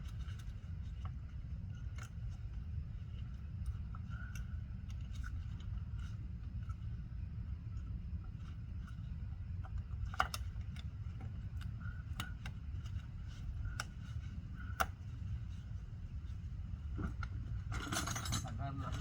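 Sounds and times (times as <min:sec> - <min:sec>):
steady low rumble: 0:00.0 - 0:19.0.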